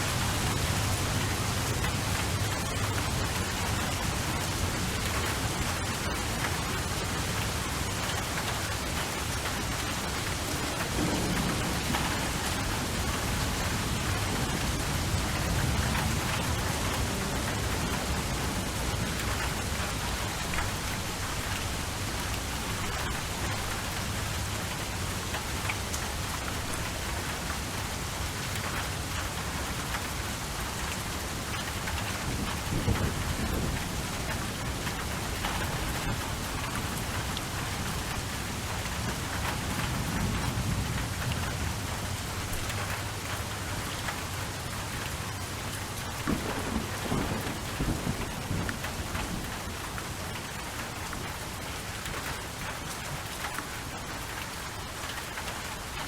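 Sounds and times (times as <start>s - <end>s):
steady rain: 0.0s - 56.0s
thunder rolling: 10.1s - 20.8s, 32.2s - 37.7s, 46.2s - 49.8s.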